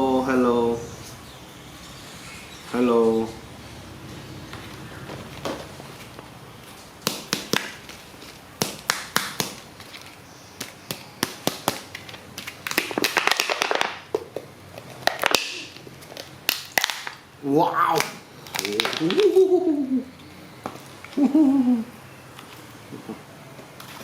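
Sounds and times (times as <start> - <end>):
plastic packaging crackling: 5.1 - 17.3, 17.9 - 19.4
plastic packaging clicking: 7.0 - 14.2, 14.8 - 17.2, 18.0 - 19.3.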